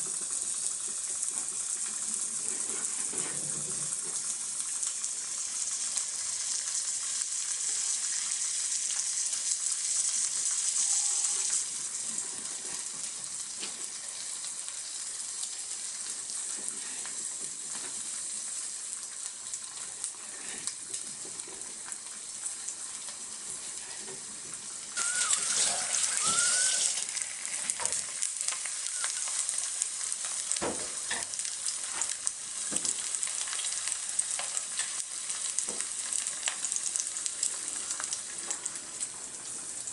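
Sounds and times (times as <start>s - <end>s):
food sizzling in a pan: 0.0s - 39.9s
short squeaks: 25.0s - 27.0s.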